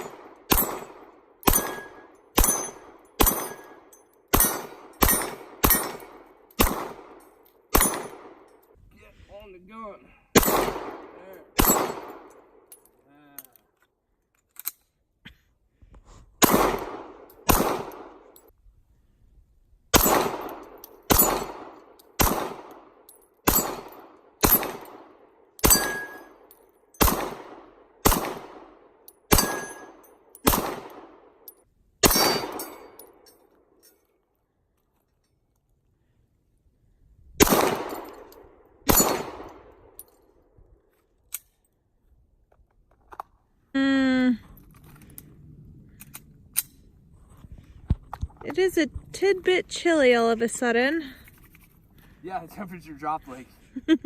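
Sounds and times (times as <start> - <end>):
pistol shots echoing: 0.0 - 8.5, 10.3 - 12.6, 16.4 - 18.3, 19.9 - 26.3, 27.0 - 31.3, 32.0 - 33.0, 37.4 - 40.0.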